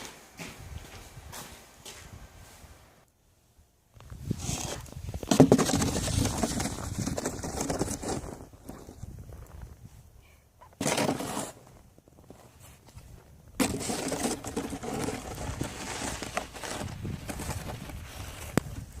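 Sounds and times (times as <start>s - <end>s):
snow shovel scraping snow: 4.3s - 4.8s, 10.7s - 11.8s, 13.6s - 18.6s.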